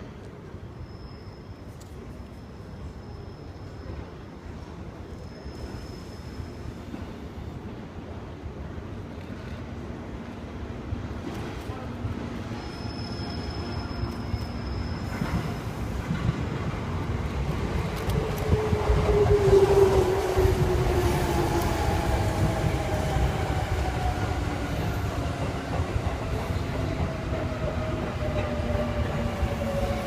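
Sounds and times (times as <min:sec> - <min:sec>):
train wheels clattering on rails: 0:13.7 - 0:30.0.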